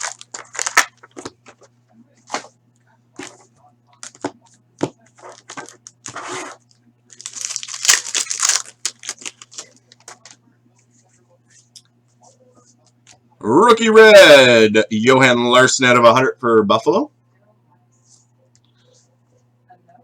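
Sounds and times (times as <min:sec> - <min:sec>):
plastic wrapping tearing and crinkling: 0:00.0 - 0:01.6, 0:05.2 - 0:10.4
faint steady hum: 0:00.0 - 0:20.0.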